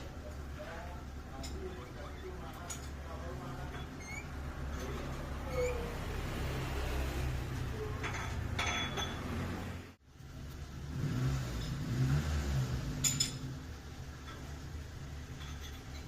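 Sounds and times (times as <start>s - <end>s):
sharp metallic clinks: 13.0s - 13.5s.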